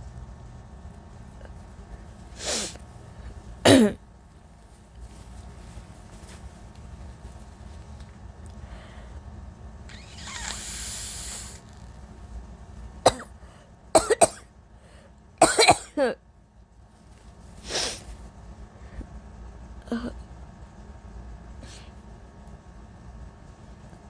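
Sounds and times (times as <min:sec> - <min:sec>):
woman coughing: 0:03.7 - 0:04.0, 0:13.1 - 0:13.4, 0:14.0 - 0:14.5, 0:15.4 - 0:16.2
noisy breath in: 0:08.6 - 0:09.2, 0:09.9 - 0:11.7, 0:14.7 - 0:15.2.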